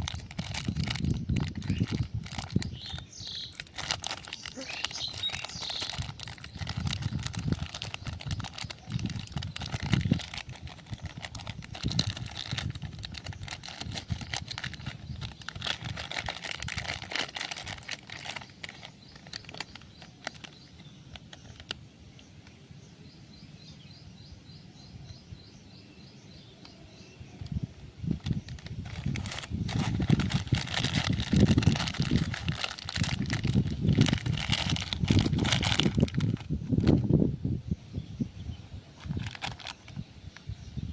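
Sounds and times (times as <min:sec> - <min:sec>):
plastic wrapper crinkling: 0:00.0 - 0:21.8, 0:28.1 - 0:37.1, 0:39.0 - 0:40.0
bird chirping: 0:00.6 - 0:16.1, 0:17.7 - 0:32.4.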